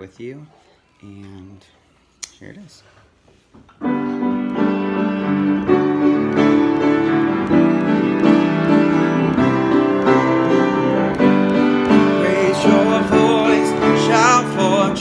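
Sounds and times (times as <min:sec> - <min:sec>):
piano chords: 0:03.8 - 0:15.0.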